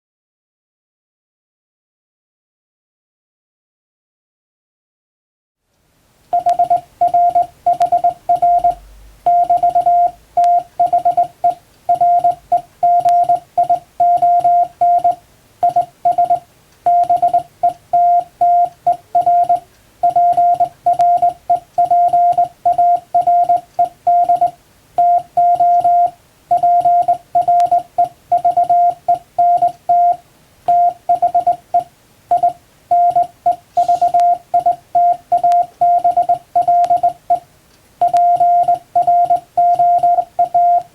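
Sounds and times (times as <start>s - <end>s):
morse code beeps: 6.3s - 40.9s.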